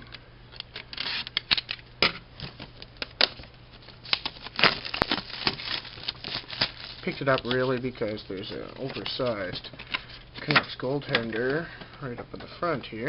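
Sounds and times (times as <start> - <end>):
packaging snaps: 2.4 - 11.6
card packaging crinkling: 2.4 - 11.7.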